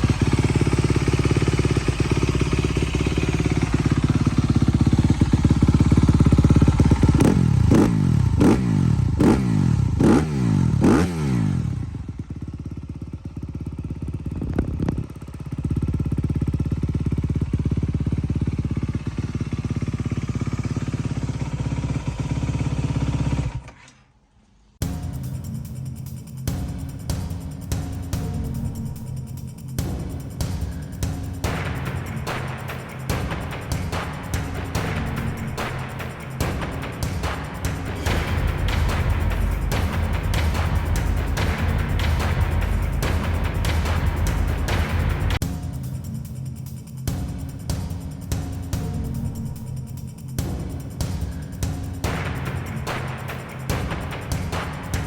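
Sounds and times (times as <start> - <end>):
dirt bike engine revving: 0.0 - 12.4, 31.5 - 45.4.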